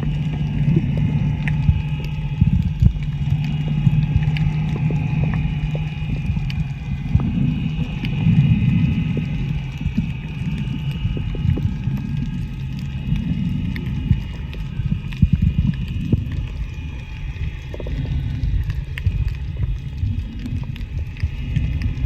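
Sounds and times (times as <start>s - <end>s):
boat engine droning: 0.0s - 22.0s.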